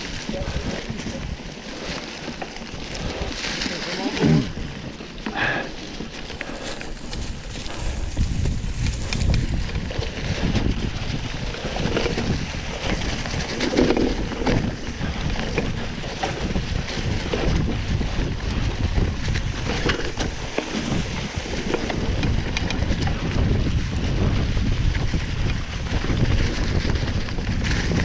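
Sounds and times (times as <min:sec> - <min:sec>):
wind rushing over microphone: 0:00.0 - 0:28.0
small clicks and rattles: 0:19.2 - 0:23.4.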